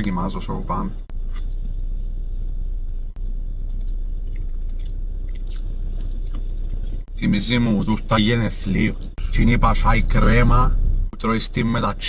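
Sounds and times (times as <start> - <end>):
steady low hum: 0.0 - 12.0
person chewing food: 3.6 - 7.1.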